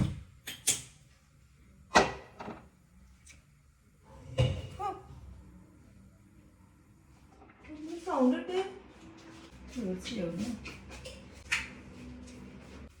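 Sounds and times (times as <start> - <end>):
kitchen knocks and bangs: 0.0 - 0.3, 1.9 - 2.6.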